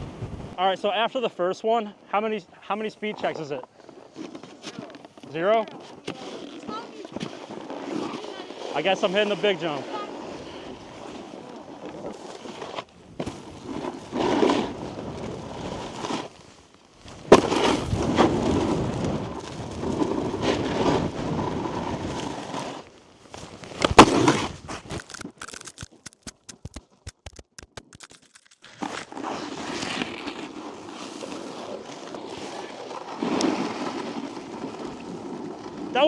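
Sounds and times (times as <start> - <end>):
sharp impacts: 24.9 - 29.0
scattered clicks: 24.9 - 29.1.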